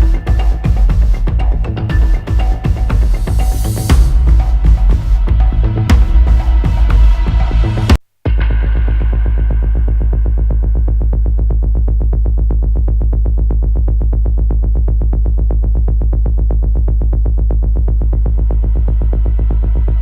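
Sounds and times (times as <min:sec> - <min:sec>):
fast synthesizer pulse: 0:00.0 - 0:08.0
heavy bass: 0:00.0 - 0:20.0.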